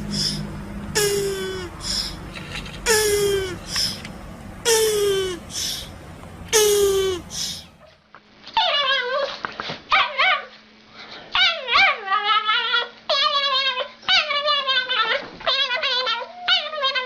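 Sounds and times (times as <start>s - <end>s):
faint hum: 0.0s - 9.3s
dog whining howls: 8.6s - 9.3s, 11.4s - 17.0s.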